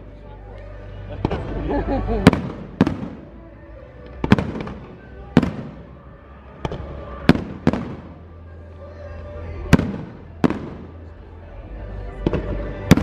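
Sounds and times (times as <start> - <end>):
fireworks bangs: 2.2 - 3.3, 4.2 - 6.0, 6.6 - 8.4, 9.7 - 11.1.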